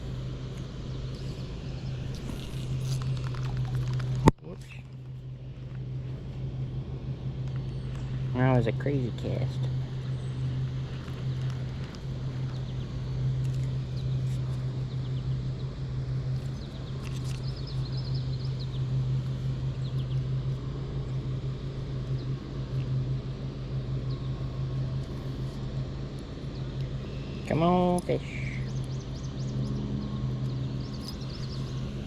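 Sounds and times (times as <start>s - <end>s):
low machine hum: 0.0s - 32.0s
high chirping: 28.3s - 32.0s.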